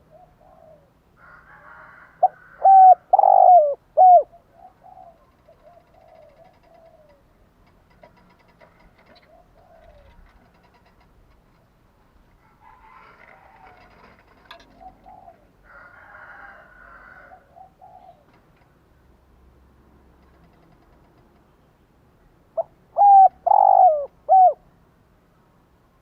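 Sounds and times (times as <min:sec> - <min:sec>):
dove cooing: 0:00.0 - 0:01.0, 0:02.1 - 0:07.3, 0:08.6 - 0:10.6, 0:12.4 - 0:16.0, 0:16.6 - 0:18.4, 0:22.6 - 0:24.6.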